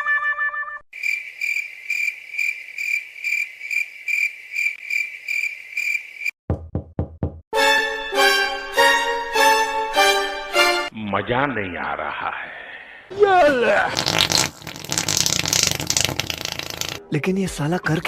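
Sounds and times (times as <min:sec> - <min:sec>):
crickets chirping sound effect: 0:01.0 - 0:06.4
music: 0:07.5 - 0:11.0, 0:17.0 - 0:18.0.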